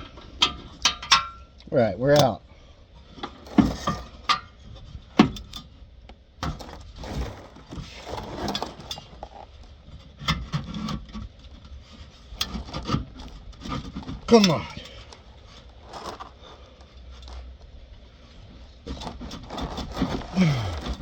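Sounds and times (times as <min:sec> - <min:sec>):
metal clanks and knocks: 0:00.0 - 0:01.5, 0:03.2 - 0:05.6, 0:12.4 - 0:16.4
metal scraping: 0:06.4 - 0:09.5.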